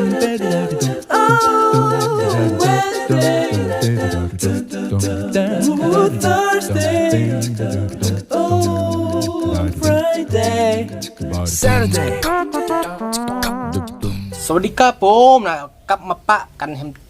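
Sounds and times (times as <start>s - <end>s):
voices singing: 0.0s - 14.7s
regular beat: 0.0s - 14.8s
pulsing low bass: 6.1s - 10.0s, 11.2s - 12.3s.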